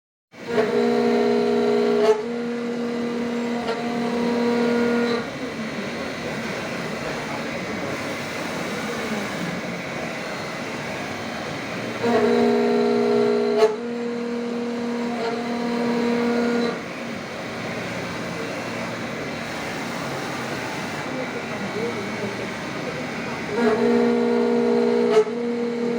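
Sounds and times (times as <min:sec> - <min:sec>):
machining noise: 0:00.4 - 0:25.9
milling cutter whine: 0:00.4 - 0:25.9.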